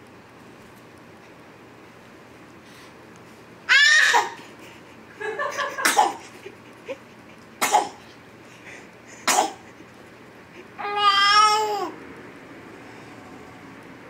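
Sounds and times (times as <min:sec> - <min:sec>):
kitten sneezing: 0:05.8 - 0:06.2, 0:07.6 - 0:08.0, 0:09.3 - 0:09.7.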